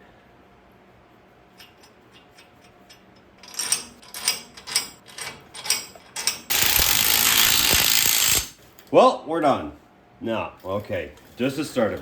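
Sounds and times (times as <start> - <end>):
ratchet wrench clicking: 2.9 - 8.6.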